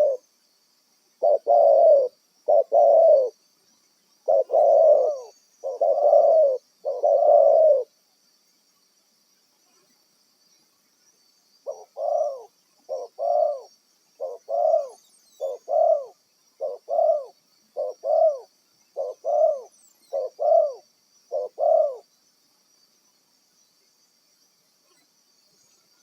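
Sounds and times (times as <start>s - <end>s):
dove cooing: 0.0s - 0.2s, 1.2s - 3.4s, 4.2s - 7.9s, 11.6s - 22.0s.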